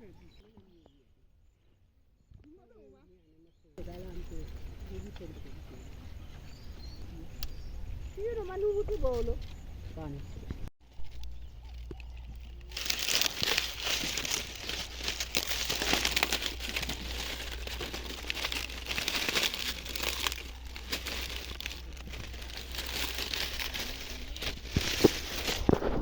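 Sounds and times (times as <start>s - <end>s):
dry maize leaves crackling: 10.8s - 26.0s.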